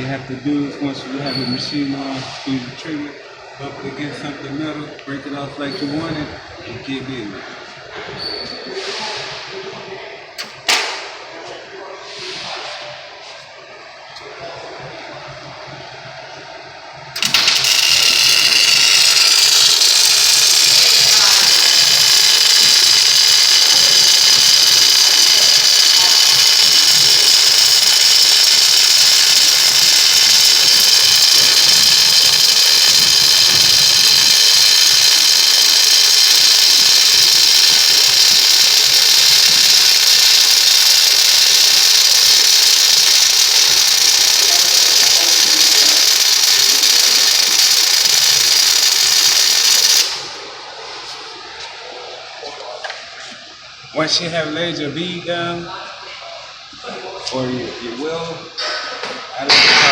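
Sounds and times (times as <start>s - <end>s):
welding arc hissing: 10.4s - 11.0s, 17.2s - 50.4s.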